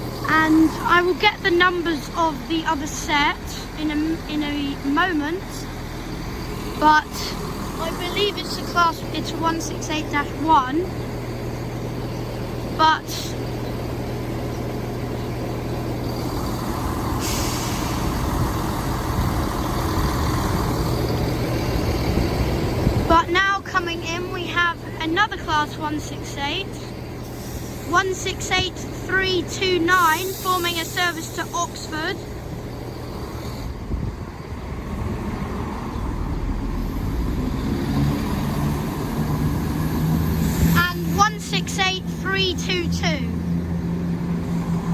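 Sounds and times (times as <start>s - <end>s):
diesel train engine drone: 0.0s - 44.9s
air brake hiss: 17.1s - 18.4s, 27.2s - 27.9s.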